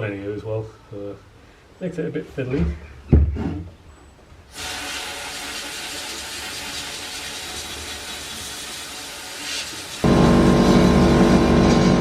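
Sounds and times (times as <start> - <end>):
blasting gun hissing: 4.5 - 11.6.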